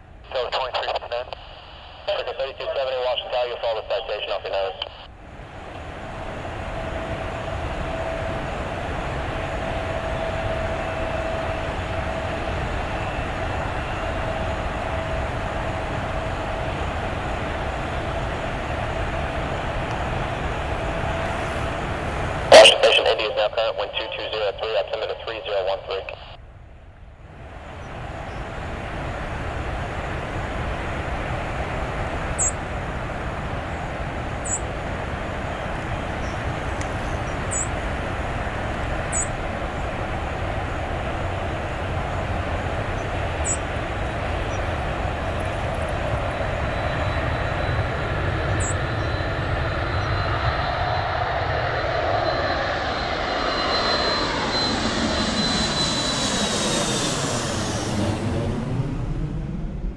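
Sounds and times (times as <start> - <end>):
jet engines at high power: 0.0 - 59.9
thin high whine: 45.7 - 58.9.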